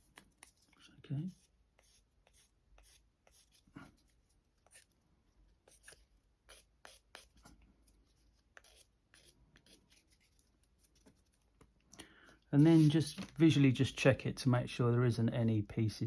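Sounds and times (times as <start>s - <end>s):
sanding stick scratching plastic: 12.6s - 13.2s.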